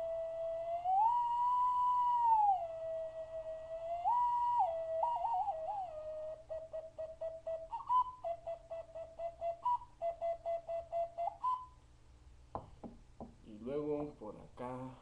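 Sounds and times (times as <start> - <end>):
ocarina whistling notes: 0.0 - 11.8.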